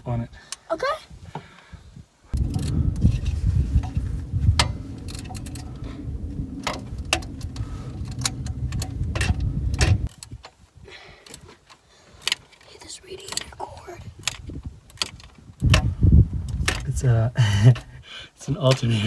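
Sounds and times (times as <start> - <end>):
loud uneven low rumble: 2.4 - 10.1.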